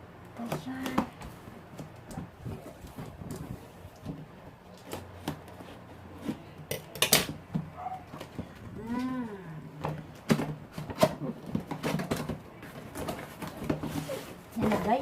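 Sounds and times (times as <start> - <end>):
cardboard box rustling and crackling: 10.1 - 15.0.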